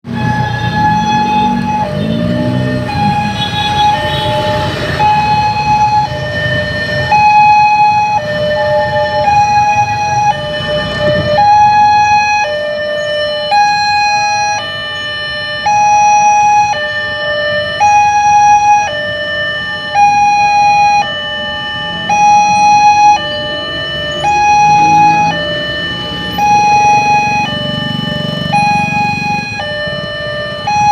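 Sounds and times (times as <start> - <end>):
level crossing warning siren: 0.0 - 30.9.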